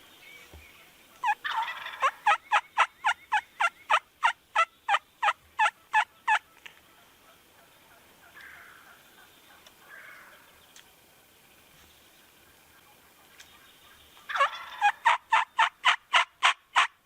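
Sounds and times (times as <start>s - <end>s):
turkey yelps: 1.1s - 10.4s, 13.3s - 17.0s.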